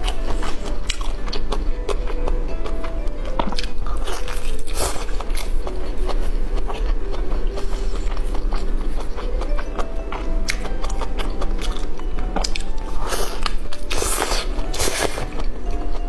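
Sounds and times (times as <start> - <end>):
person biting and chewing: 0.0 - 16.0
loud bites or slurps: 13.0 - 15.4.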